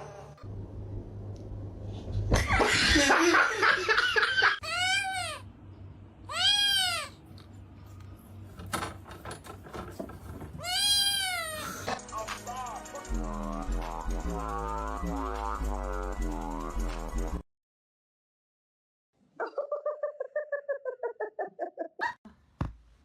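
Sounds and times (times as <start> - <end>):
human laughter: 2.3 - 4.6, 19.4 - 22.2
cat meowing: 6.3 - 7.2, 10.6 - 11.7.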